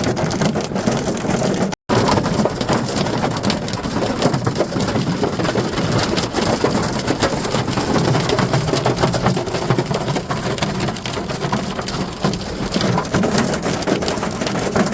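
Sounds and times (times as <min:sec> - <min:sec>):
hailstones clattering: 0:00.0 - 0:14.9.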